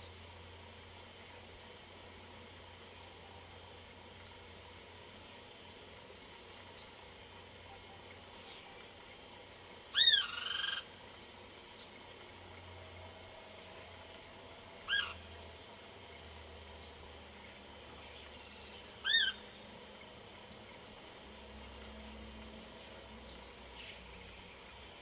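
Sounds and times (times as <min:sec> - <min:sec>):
bird calling short arched notes: 0:14.9 - 0:15.2, 0:18.4 - 0:19.5.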